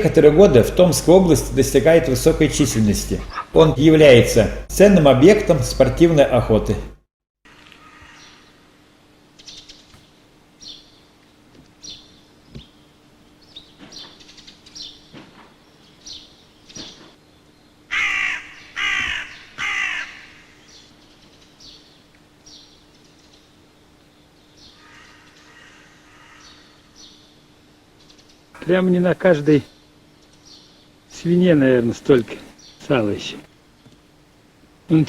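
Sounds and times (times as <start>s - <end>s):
crow cawing: 7.7s - 8.5s, 17.9s - 20.6s, 24.8s - 26.8s.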